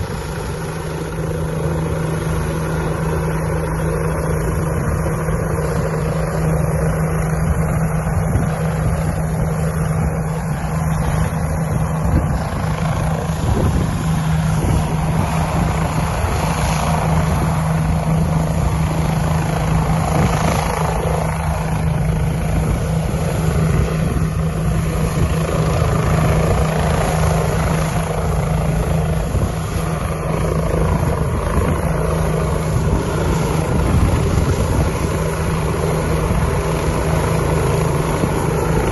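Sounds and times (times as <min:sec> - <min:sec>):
helicopter rotor and engine drone: 0:00.0 - 0:38.9.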